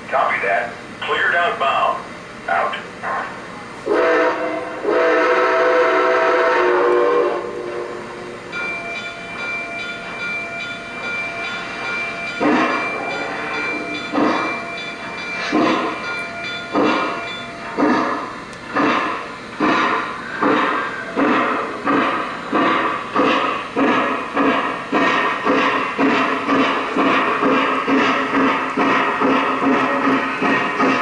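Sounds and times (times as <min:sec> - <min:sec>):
locomotive chuffing: 0:00.0 - 0:31.0
steam whistle blast: 0:03.9 - 0:08.4.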